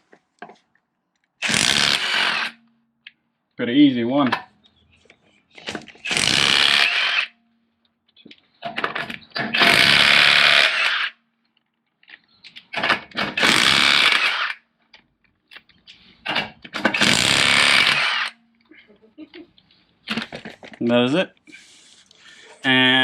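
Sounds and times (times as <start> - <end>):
impact wrench hammering: 16.3 - 18.4.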